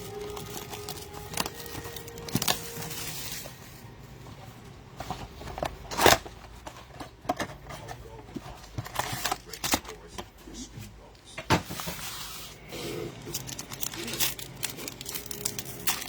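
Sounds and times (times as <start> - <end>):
wrappers crinkling and tearing: 0.0 - 3.6, 8.9 - 10.0, 12.8 - 16.0.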